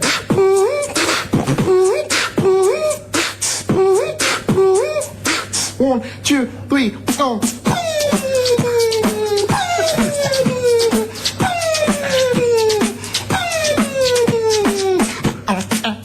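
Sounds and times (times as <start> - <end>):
beatboxing drum beat: 0.0 - 5.8, 7.1 - 16.0
sliding vocal tone: 0.0 - 16.0.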